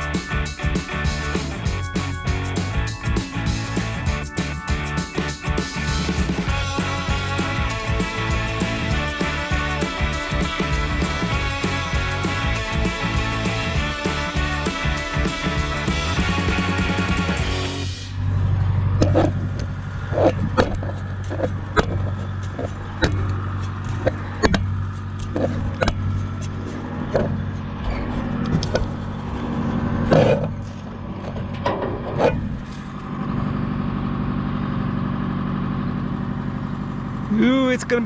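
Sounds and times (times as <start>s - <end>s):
farm machinery engine running: 0.0s - 18.0s.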